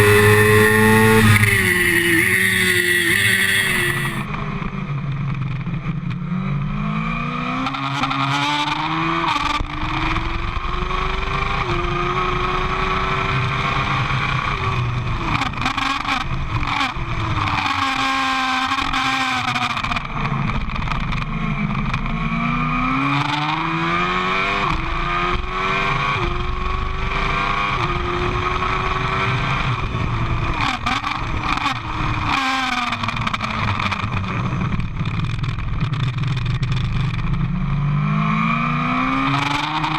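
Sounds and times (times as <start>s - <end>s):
motorcycle engine racing: 0.0s - 4.2s.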